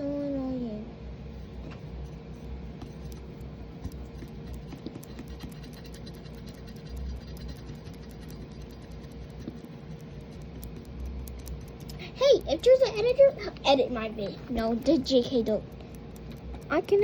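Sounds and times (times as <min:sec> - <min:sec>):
steady low hum: 0:00.0 - 0:17.0
close scratching and handling: 0:02.8 - 0:12.9.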